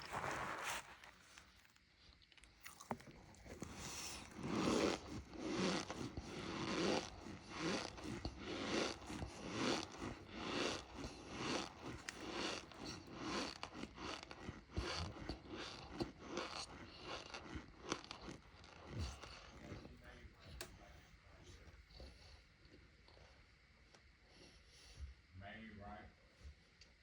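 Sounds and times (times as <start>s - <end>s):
person chewing crunchily: 0.0s - 20.2s.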